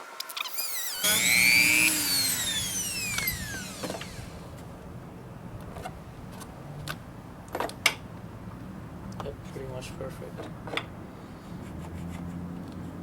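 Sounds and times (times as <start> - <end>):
power tool whine winding down: 0.3 - 5.0.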